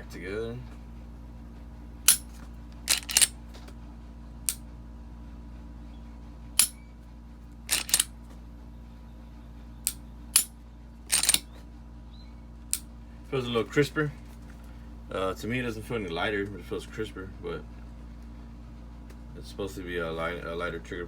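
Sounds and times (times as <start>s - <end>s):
pistol dry-fire clicks: 2.9s - 3.3s, 7.7s - 8.1s, 9.9s - 10.5s, 11.1s - 11.4s.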